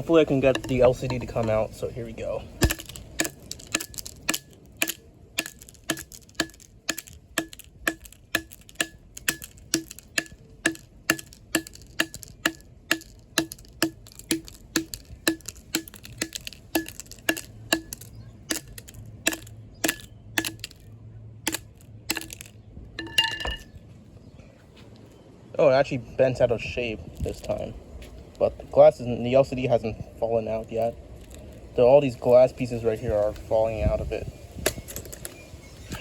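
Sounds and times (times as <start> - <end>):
phone being struck: 2.6 - 20.8.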